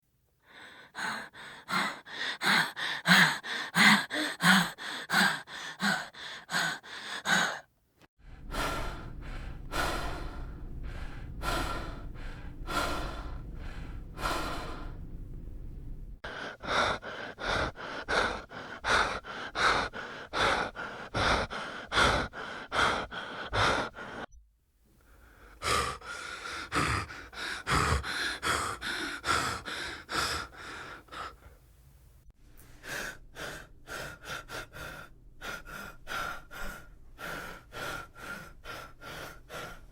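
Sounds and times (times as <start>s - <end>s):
person panting heavily: 0.4s - 15.2s, 16.2s - 24.3s, 25.1s - 31.6s, 32.7s - 39.9s
low rumbling hum: 8.2s - 16.3s.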